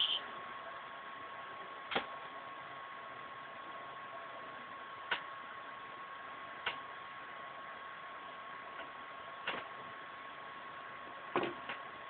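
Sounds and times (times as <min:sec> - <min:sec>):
thin high steady tone: 0:00.0 - 0:00.9.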